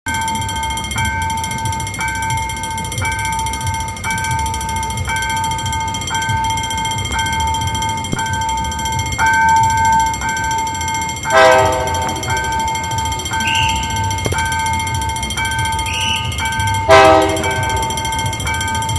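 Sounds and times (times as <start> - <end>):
diesel train rumble: 0.1 - 18.9
two-tone electronic warning beep: 0.1 - 18.9
train horn blast: 11.3 - 12.6, 15.9 - 18.0.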